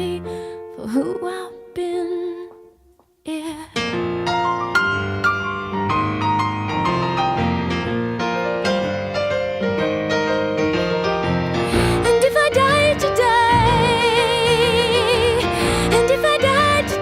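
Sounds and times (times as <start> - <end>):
piano playing rapid notes: 3.8 - 17.0
person singing: 11.7 - 17.0.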